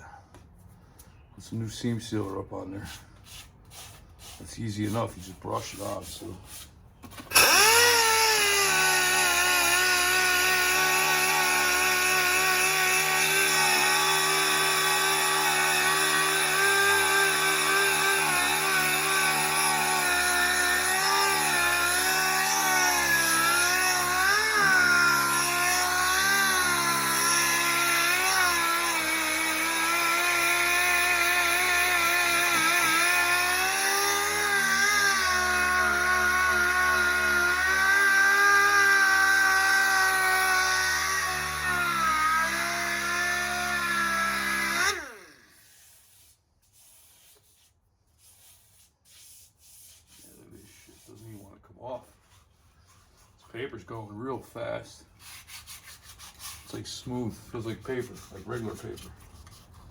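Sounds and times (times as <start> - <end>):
power sander running: 7.2 - 46.2.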